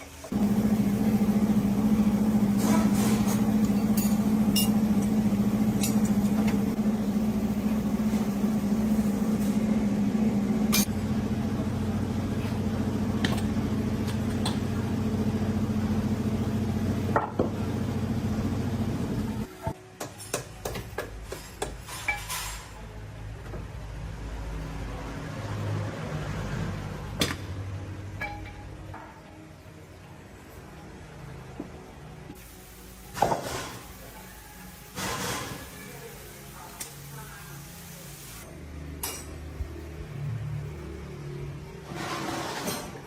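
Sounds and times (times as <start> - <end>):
machine motor humming: 0.3 - 16.9.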